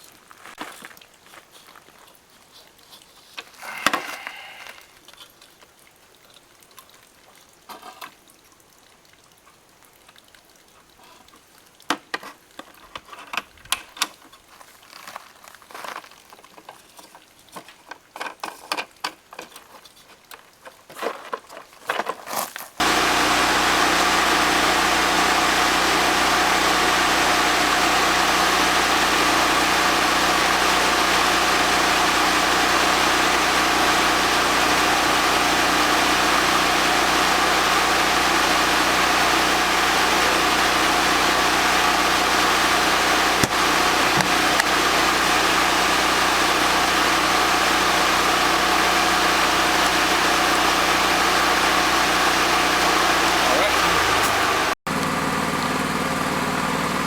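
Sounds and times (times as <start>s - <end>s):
loud machine drone: 22.8s - 57.0s.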